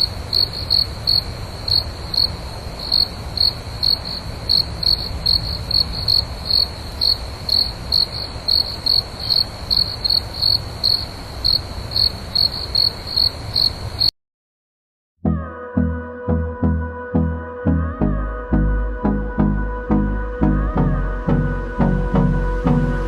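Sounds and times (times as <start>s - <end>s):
crickets chirping: 0.0s - 14.1s.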